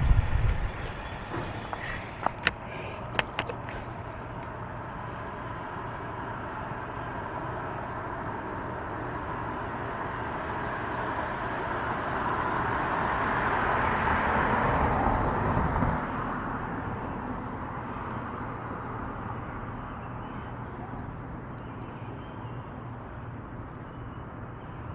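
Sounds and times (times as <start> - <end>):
motor vehicle passing: 0.0 - 4.3.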